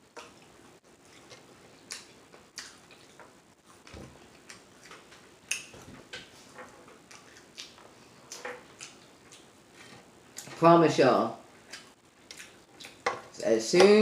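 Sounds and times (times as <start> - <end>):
open-mouthed chewing: 0.2 - 5.7, 7.0 - 9.6, 11.6 - 13.0.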